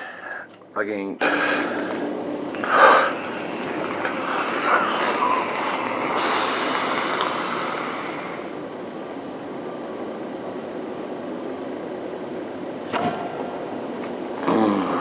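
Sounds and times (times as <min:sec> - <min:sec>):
person exhaling vapour: 0:01.2 - 0:08.6, 0:14.4 - 0:15.0.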